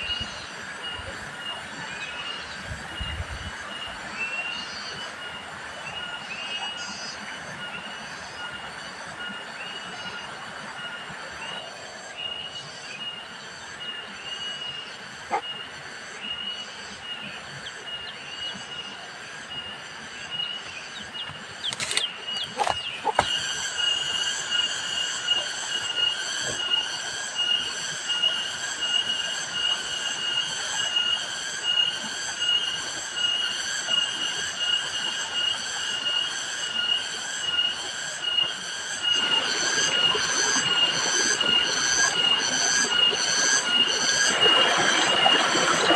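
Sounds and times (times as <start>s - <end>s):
insects chirring: 0.0s - 45.9s
sharp clicks: 21.6s - 22.8s.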